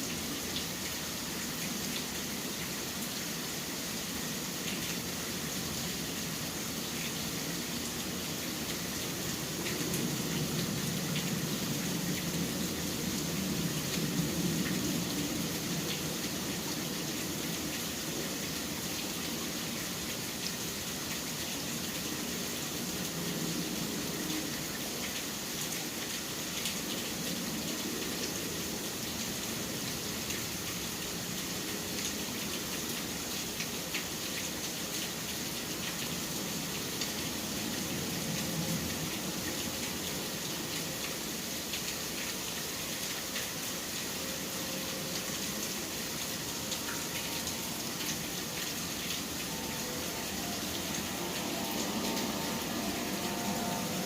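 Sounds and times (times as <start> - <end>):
rain falling: 0.0 - 54.0
low city rumble: 47.6 - 54.0.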